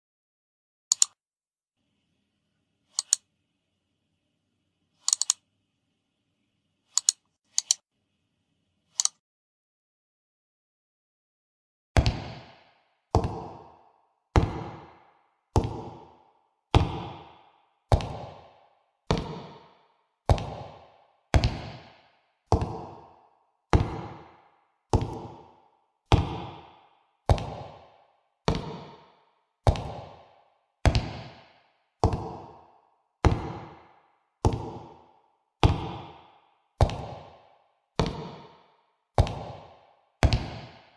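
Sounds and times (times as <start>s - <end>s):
heavy echoing footsteps: 12.0s - 40.9s.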